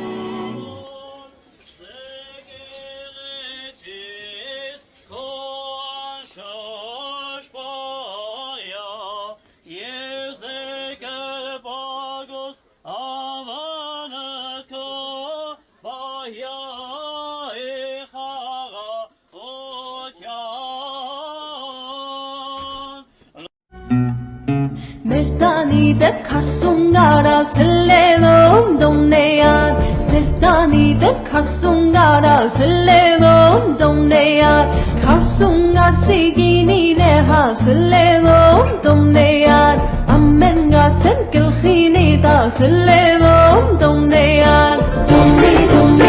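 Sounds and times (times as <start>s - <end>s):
man singing unaccompanied chant: 0.5s - 23.5s
breaths: 24.6s - 25.1s, 34.7s - 35.0s.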